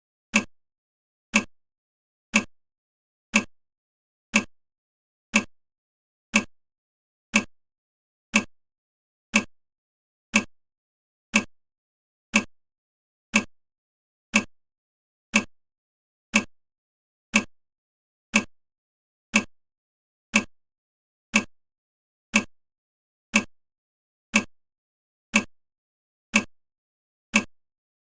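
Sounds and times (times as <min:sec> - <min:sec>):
countdown timer ticking: 0:00.3 - 0:00.5, 0:01.3 - 0:01.5, 0:02.3 - 0:02.5, 0:03.3 - 0:03.5, 0:04.3 - 0:04.5, 0:05.3 - 0:05.5, 0:06.3 - 0:06.5, 0:07.3 - 0:07.5, 0:08.3 - 0:08.5, 0:09.3 - 0:09.5, 0:10.3 - 0:10.5, 0:11.3 - 0:11.5, 0:12.3 - 0:12.5, 0:13.3 - 0:13.5, 0:14.3 - 0:14.5, 0:15.3 - 0:15.5, 0:16.3 - 0:16.5, 0:17.3 - 0:17.5, 0:18.3 - 0:18.5, 0:19.3 - 0:19.5, 0:20.3 - 0:20.5, 0:21.3 - 0:21.5, 0:22.3 - 0:22.5, 0:23.3 - 0:23.5, 0:24.3 - 0:24.5, 0:25.3 - 0:25.5, 0:26.3 - 0:26.5, 0:27.3 - 0:27.6.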